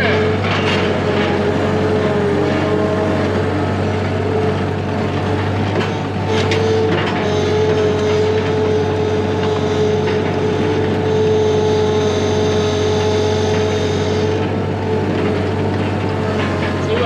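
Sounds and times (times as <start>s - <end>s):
engine droning steadily: 0.0s - 17.0s.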